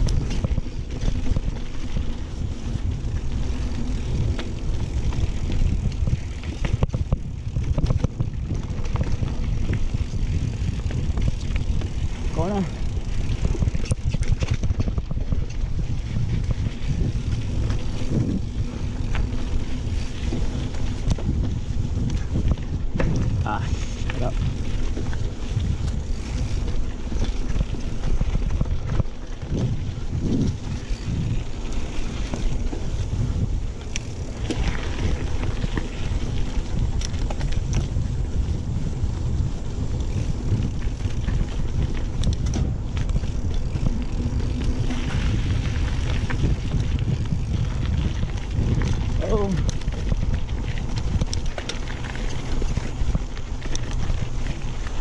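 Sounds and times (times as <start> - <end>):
tyres rumbling on dirt trail: 0.0 - 55.0
wind on microphone: 0.0 - 55.0
bike frame knocks and rattles: 3.2 - 23.4, 40.1 - 54.4.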